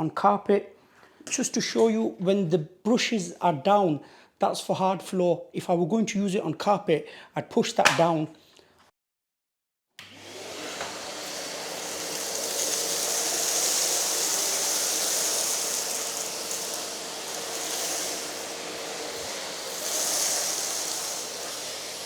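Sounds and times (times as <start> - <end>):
vacuum cleaner running: 10.0 - 22.0.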